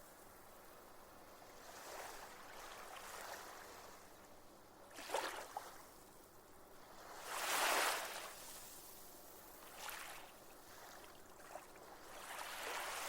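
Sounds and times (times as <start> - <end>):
small waves washing on shore: 6.8 - 13.0.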